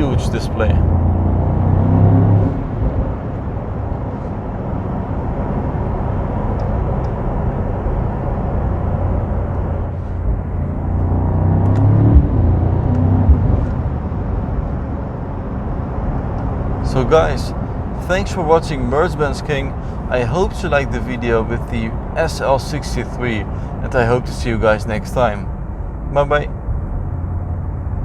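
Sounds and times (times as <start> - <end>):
car engine running: 0.0 - 28.0
tyre and road noise: 0.0 - 28.0
short knocks: 13.0 - 13.8.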